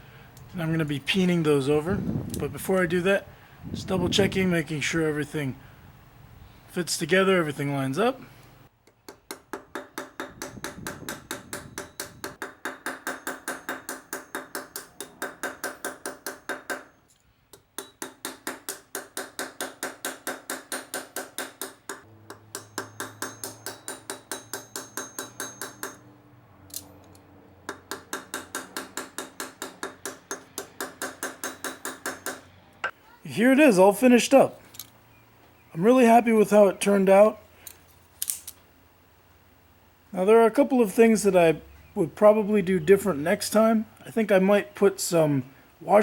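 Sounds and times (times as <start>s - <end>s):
hammer tapping on steel: 8.8s - 26.0s, 27.7s - 33.0s.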